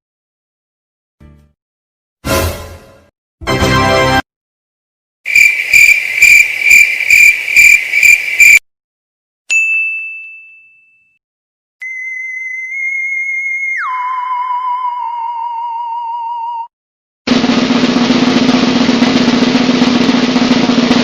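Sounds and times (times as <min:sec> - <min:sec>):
steady high whistling tone: 0:05.3 - 0:08.6, 0:11.8 - 0:16.4
ringing ding: 0:09.5 - 0:11.2.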